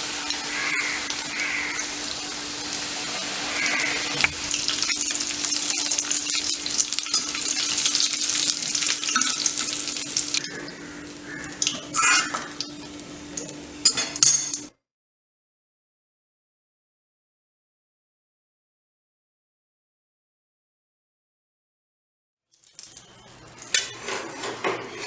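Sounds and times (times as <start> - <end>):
food deep-frying in hot oil: 0.0 - 14.7, 22.6 - 25.0.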